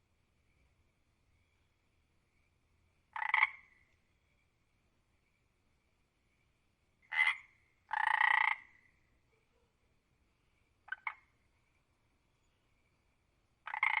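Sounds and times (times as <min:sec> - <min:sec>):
frog croaking: 0:03.1 - 0:03.8, 0:07.0 - 0:08.8, 0:10.8 - 0:11.4, 0:13.6 - 0:14.0.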